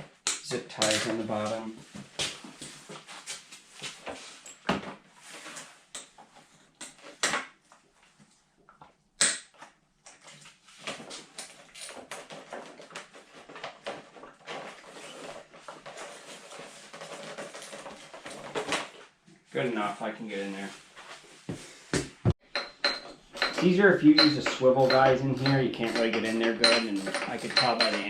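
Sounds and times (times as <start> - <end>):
hand tools and parts rattling: 11.2 - 19.0, 22.4 - 28.0.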